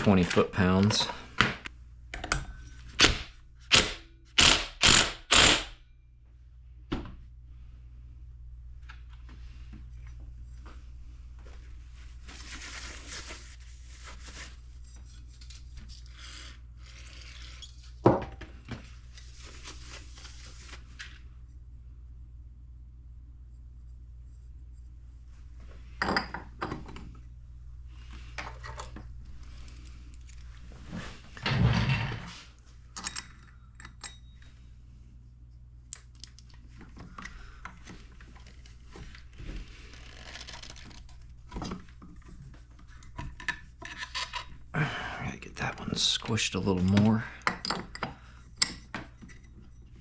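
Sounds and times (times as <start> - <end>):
steady low hum: 0.0 - 17.2
metal parts and tools clinking: 35.9 - 36.6.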